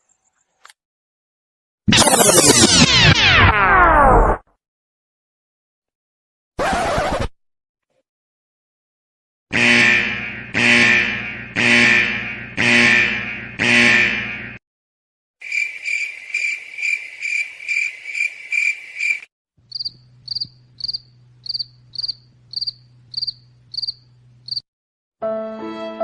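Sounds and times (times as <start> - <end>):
cricket chirping: 15.4 - 24.6
low steady hum: 19.9 - 24.5.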